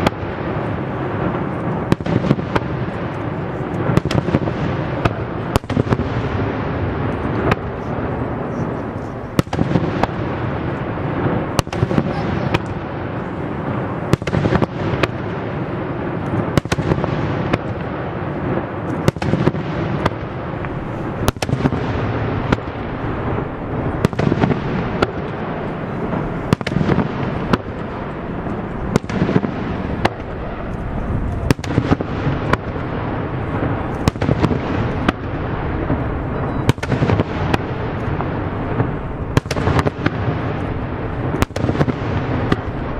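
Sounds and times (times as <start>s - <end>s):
fireworks bangs and cracks: 0.0s - 42.9s
low rumble of bursts: 21.8s - 39.4s.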